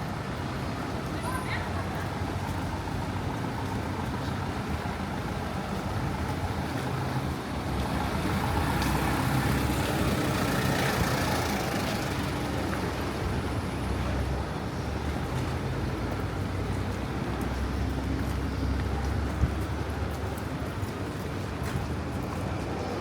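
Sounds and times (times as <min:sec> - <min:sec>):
city road traffic: 0:00.0 - 0:23.0
large vehicle passing rumble: 0:04.6 - 0:20.7.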